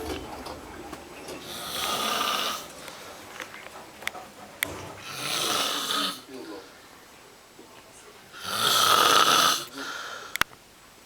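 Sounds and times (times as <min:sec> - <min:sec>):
person snoring: 0:08.4 - 0:10.0.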